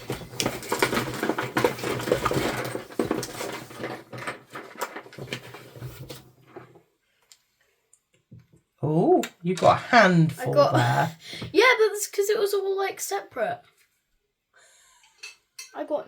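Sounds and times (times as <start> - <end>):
small pieces clattering: 0.0 - 5.7.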